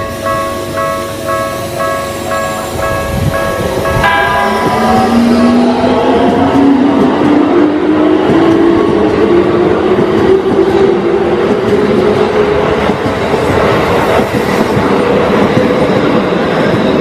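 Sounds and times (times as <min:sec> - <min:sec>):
electric train running past: 0:00.0 - 0:17.0
steady rising tone: 0:00.3 - 0:08.2.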